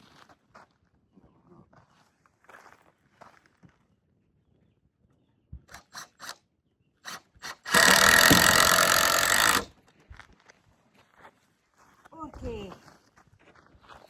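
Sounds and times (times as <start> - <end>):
power tool running into wood: 5.7 - 6.4, 7.0 - 9.7.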